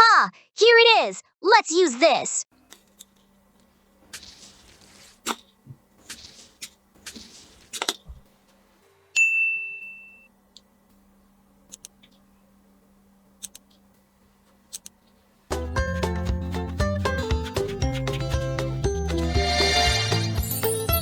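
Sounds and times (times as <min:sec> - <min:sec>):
bright ding: 0:09.1 - 0:10.3
music: 0:15.5 - 0:21.0.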